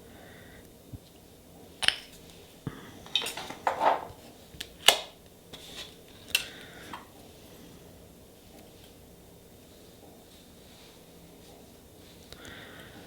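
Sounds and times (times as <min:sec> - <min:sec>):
metal tools clinking: 0:03.1 - 0:04.2.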